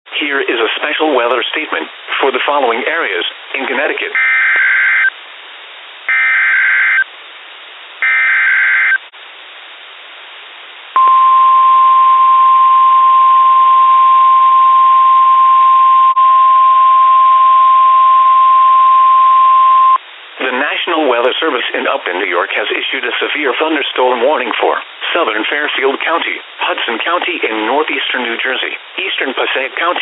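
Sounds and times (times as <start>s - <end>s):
steady alarm tone: 4.2s - 5.1s, 6.1s - 7.0s, 8.0s - 9.0s
harsh digital data bursts: 6.1s - 7.0s.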